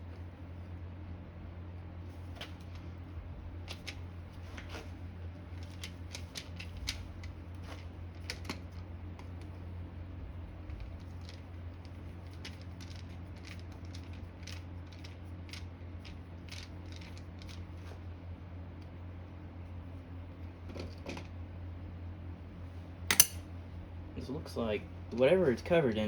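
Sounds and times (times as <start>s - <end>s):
steady low hum: 0.0s - 26.0s
hand tool clicking and scraping metal: 23.1s - 23.4s.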